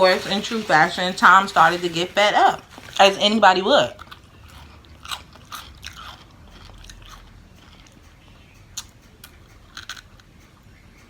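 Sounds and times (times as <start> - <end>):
person chewing food: 3.9 - 10.6.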